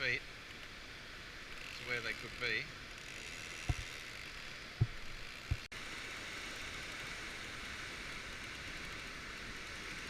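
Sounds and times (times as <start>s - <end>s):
low thumps: 4.8s - 5.7s.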